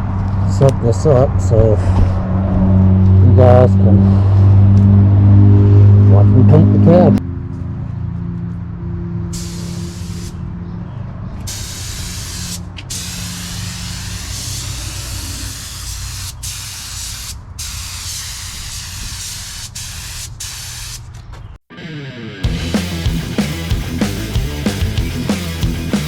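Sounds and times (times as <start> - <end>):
paint spray gun hissing: 9.4 - 10.4, 11.5 - 21.0.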